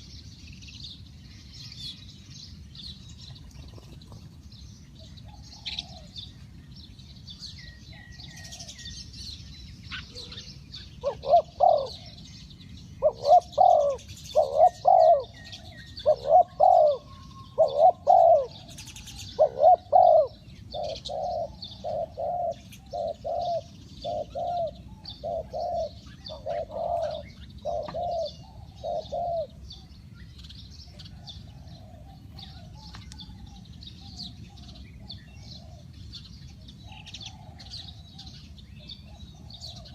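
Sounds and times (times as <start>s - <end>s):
small birds chirping: 0.0s - 39.9s
dove cooing: 5.0s - 6.5s, 7.6s - 8.9s, 9.9s - 12.3s, 13.0s - 29.9s, 30.9s - 39.9s.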